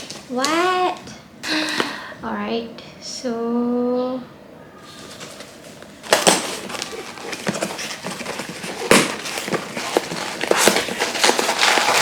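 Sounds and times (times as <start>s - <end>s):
packaging crinkling and rustling: 0.0s - 1.0s, 4.8s - 12.0s.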